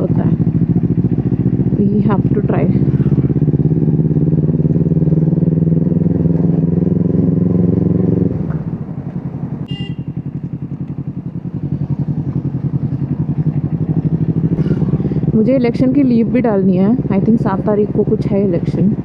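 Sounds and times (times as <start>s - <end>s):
motorcycle engine running: 0.0s - 19.0s
short high beep: 9.7s - 10.2s.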